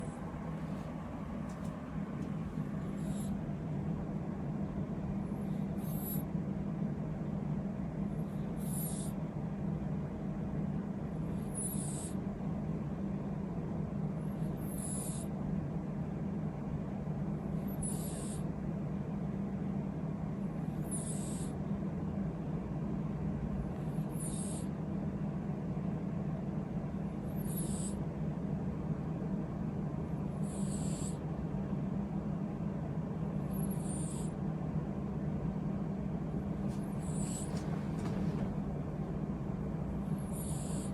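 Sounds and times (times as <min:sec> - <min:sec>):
steady low hum: 0:00.0 - 0:40.9
cat snoring: 0:02.8 - 0:03.4, 0:05.2 - 0:06.3, 0:08.1 - 0:09.2, 0:11.2 - 0:12.2, 0:14.2 - 0:15.3, 0:17.6 - 0:18.5, 0:20.6 - 0:21.6, 0:23.8 - 0:24.7, 0:27.2 - 0:28.0, 0:30.3 - 0:31.2, 0:33.4 - 0:34.4, 0:36.7 - 0:38.1, 0:40.0 - 0:40.9.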